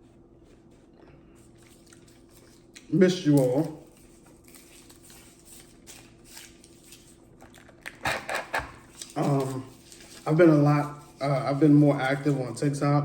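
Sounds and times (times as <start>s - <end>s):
faint steady hum: 0.0s - 13.0s
crackling of food being eaten: 0.8s - 10.2s
person speaking: 9.1s - 13.0s.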